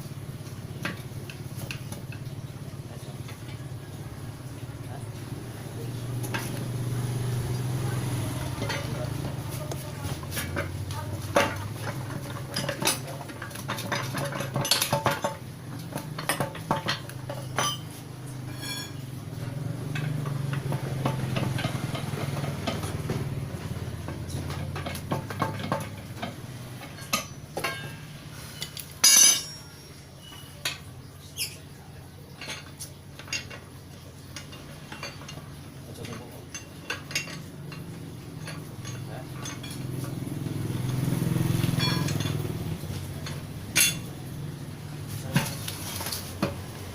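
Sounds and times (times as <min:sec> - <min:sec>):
metallic clatter: 0:06.1 - 0:31.7, 0:32.3 - 0:46.9
metal parts clinking: 0:16.0 - 0:19.0, 0:28.6 - 0:31.5, 0:41.7 - 0:42.5.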